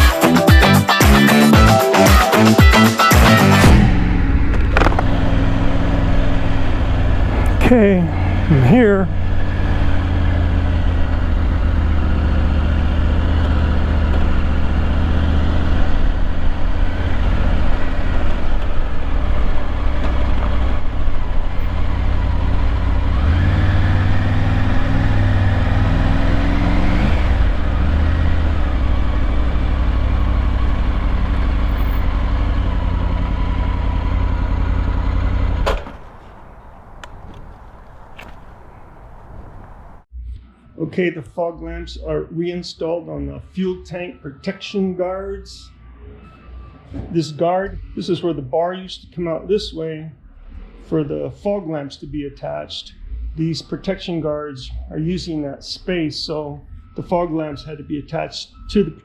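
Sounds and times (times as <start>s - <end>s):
motorcycle engine running: 3.0s - 40.0s.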